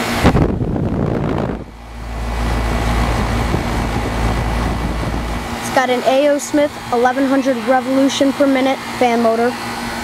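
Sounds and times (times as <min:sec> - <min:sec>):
air conditioner unit humming: 0:00.0 - 0:10.0
air rumbling on microphone: 0:00.2 - 0:07.8.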